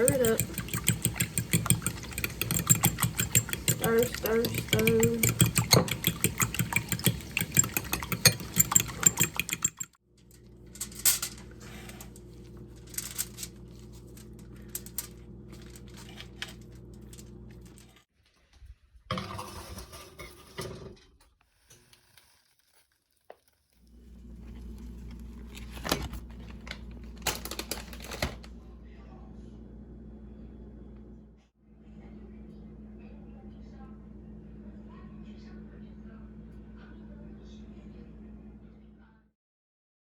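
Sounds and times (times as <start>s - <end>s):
eggs whisked in a bowl: 0.0s - 10.0s
low electrical hum: 10.1s - 18.0s, 23.8s - 39.2s.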